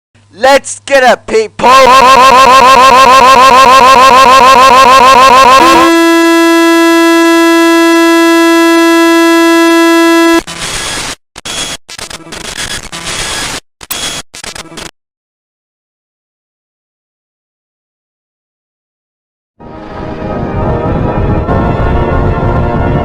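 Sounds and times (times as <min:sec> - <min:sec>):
fast warbling electronic tone: 0:01.7 - 0:10.4
flat buzzing tone: 0:01.9 - 0:11.7
crackling static: 0:05.6 - 0:14.9.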